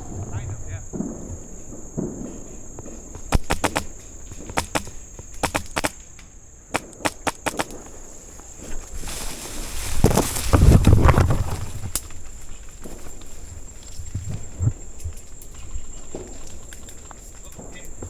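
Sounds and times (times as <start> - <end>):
airsoft gun shots: 0.0 - 8.2
rushing rustling noise: 8.5 - 14.7.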